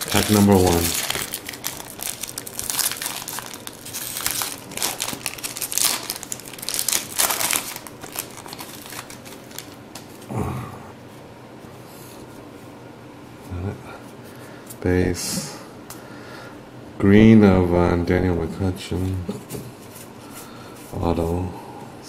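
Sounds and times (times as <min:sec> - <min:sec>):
cards rustling: 0:00.0 - 0:10.2
wrapper tearing and crinkling: 0:00.0 - 0:10.2.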